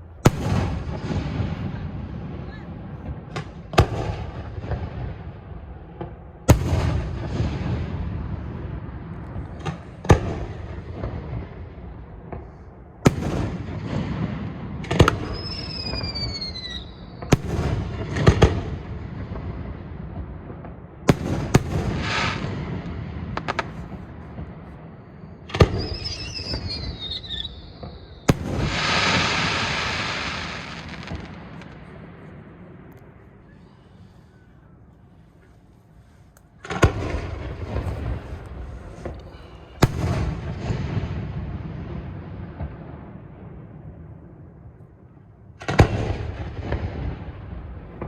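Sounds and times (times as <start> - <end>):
falling firework whistles: 15.2 - 17.3, 25.6 - 31.7
low rumbling echo: 27.7 - 45.0
loud hissing firework burst: 28.4 - 31.3.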